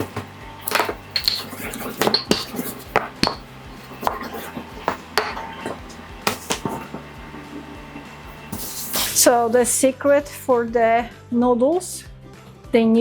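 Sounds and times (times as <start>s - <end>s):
utensils and dishes clinking: 0.0s - 9.3s.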